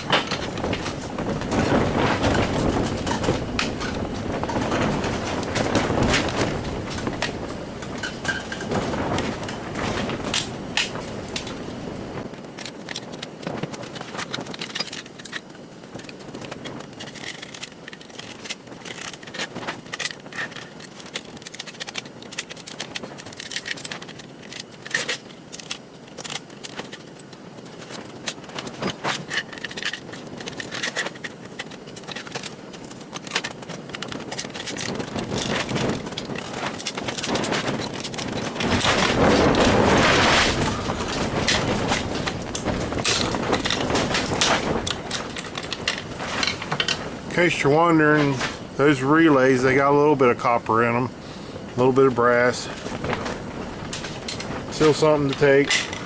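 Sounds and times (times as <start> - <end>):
wind rumble on microphone: 0.0 - 15.0, 33.5 - 56.0
hand tools clicking and scraping: 0.0 - 56.0.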